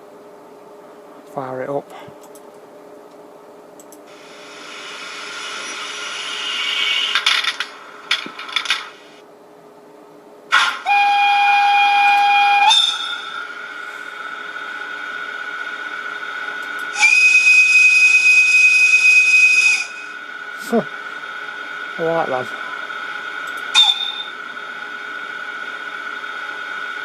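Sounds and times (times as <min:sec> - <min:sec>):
sharp clicks: 0:03.8 - 0:04.0
hiss of air: 0:04.1 - 0:07.4
locomotive whistle: 0:10.5 - 0:13.7, 0:16.9 - 0:20.3, 0:23.7 - 0:24.5.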